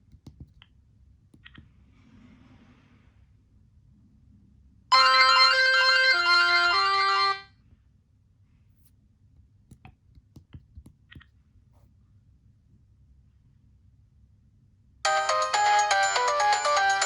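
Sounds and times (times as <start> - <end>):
phone ringtone melody: 4.9 - 7.4, 15.1 - 17.0.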